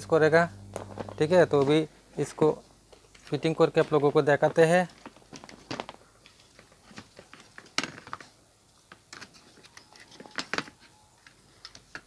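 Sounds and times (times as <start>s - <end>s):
light clicks and knocks of parts: 2.9s - 12.0s.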